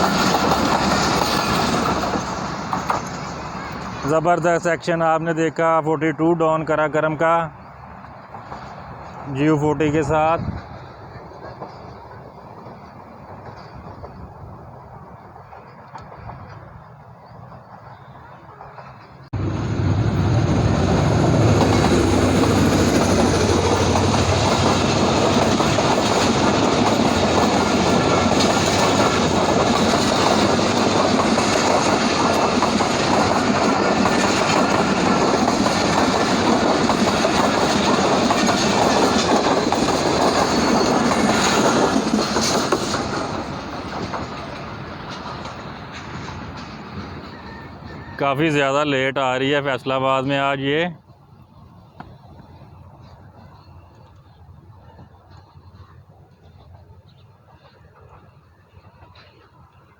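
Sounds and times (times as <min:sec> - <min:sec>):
wheels clattering over rail joints: 0:00.0 - 0:04.2, 0:10.4 - 0:48.0
train passing at speed: 0:00.0 - 0:59.9.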